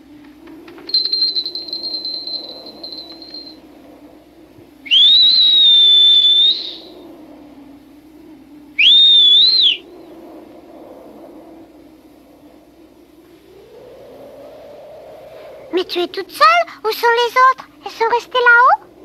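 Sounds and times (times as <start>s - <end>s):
person whistling: 4.9s - 6.9s, 8.8s - 9.8s.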